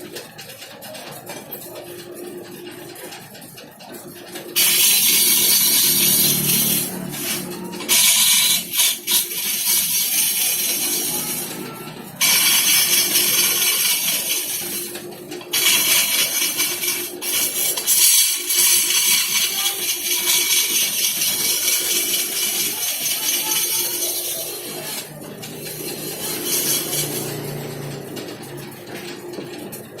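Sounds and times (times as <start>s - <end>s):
turning tool cutting wood: 4.4s - 28.5s
wood lathe humming: 4.5s - 28.2s.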